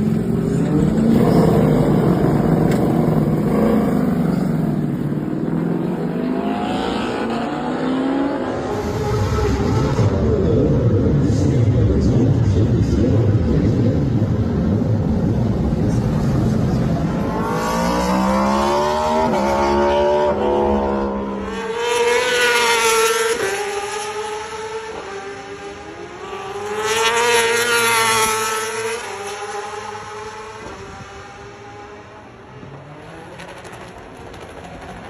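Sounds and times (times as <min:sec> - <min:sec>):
motorbike engine revving: 0:00.0 - 0:10.4, 0:14.9 - 0:31.8
motorbikes passing: 0:00.0 - 0:35.0.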